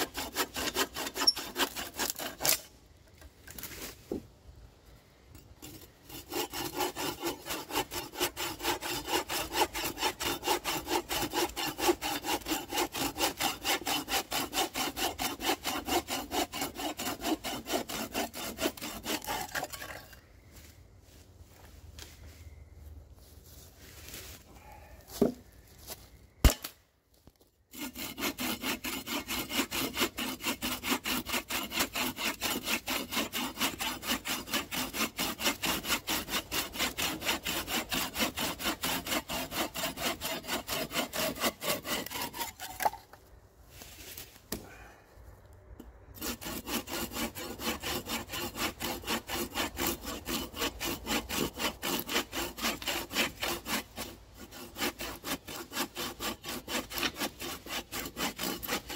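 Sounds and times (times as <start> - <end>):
hand saw cutting wood: 0.0 - 2.7, 5.6 - 20.1, 27.7 - 43.2, 45.8 - 58.9.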